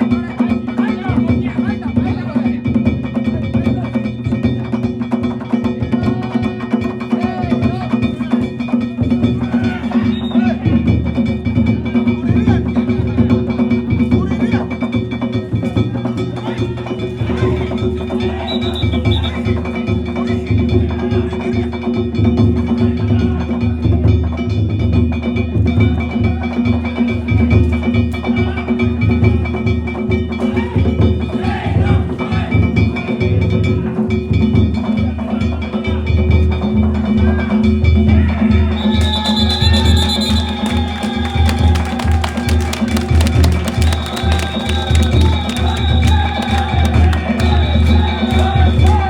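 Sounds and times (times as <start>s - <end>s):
taiko drum beating: 38.5s - 49.0s.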